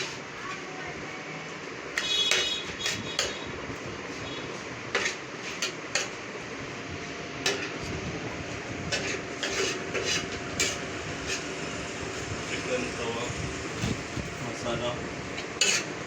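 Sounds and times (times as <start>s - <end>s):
metal utensil scraping a griddle: 2.0s - 3.4s, 4.9s - 6.2s, 8.8s - 11.6s, 15.4s - 16.0s.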